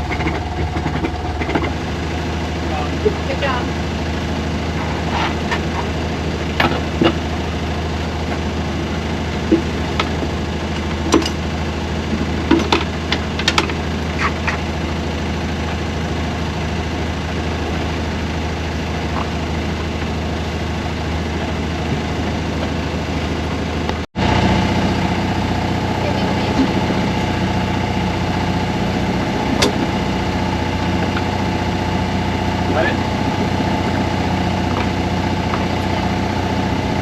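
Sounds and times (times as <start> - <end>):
boat engine running: 0.0 - 37.0.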